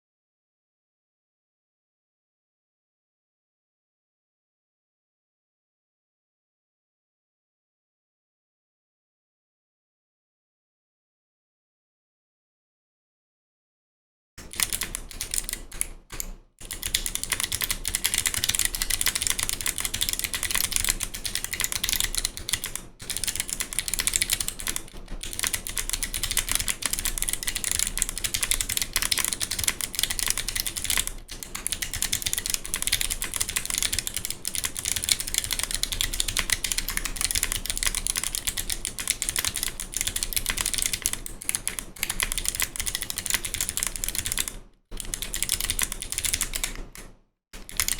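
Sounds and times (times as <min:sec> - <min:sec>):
fast typing on mechanical keyboard: 0:14.4 - 0:47.9.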